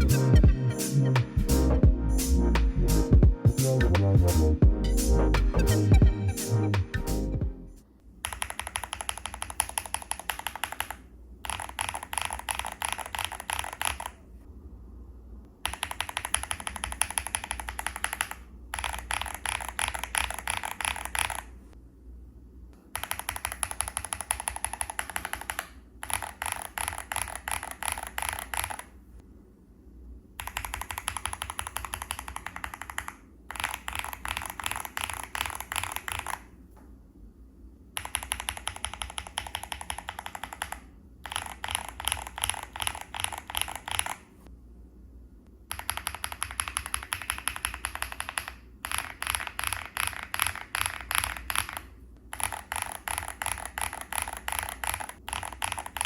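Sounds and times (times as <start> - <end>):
mechanical keyboard typing: 8.2 - 14.2, 15.6 - 21.6, 22.9 - 29.0, 30.4 - 36.5, 38.0 - 44.3, 45.7 - 56.0.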